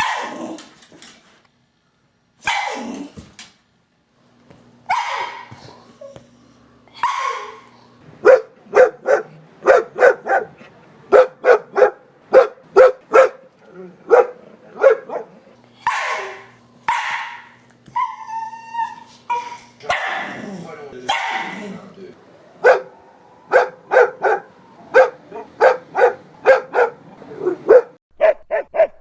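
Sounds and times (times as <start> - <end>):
dog barking: 0.0 - 0.4, 2.4 - 2.9, 4.9 - 5.6, 7.0 - 17.6, 19.8 - 20.4, 21.1 - 21.6, 22.6 - 29.0
dog whining: 5.0 - 11.9, 17.9 - 20.8.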